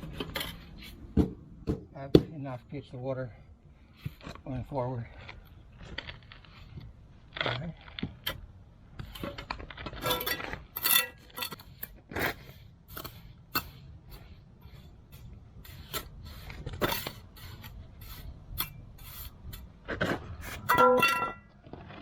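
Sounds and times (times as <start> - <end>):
trowel scraping wet concrete: 9.0 - 21.3
ringing trowel clinks: 20.7 - 21.5.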